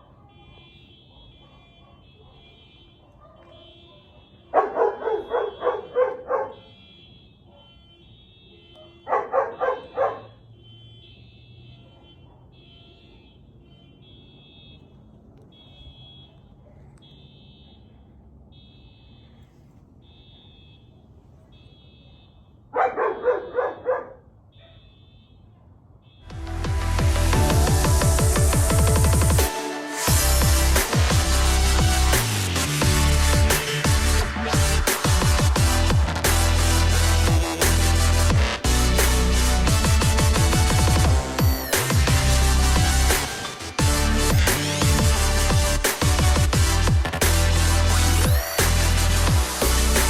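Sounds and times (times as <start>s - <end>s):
car alarm beeping: 0.0s - 23.4s, 24.4s - 50.0s
dog barking: 1.0s - 6.8s, 7.4s - 7.9s, 8.5s - 10.4s, 11.8s - 12.7s, 22.0s - 25.0s
music: 26.3s - 50.0s.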